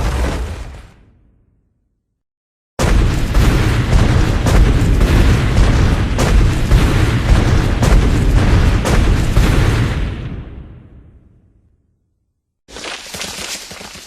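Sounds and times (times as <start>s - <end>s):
sharp crackling hits: 2.8s - 11.4s
deep noisy boom: 2.8s - 11.8s.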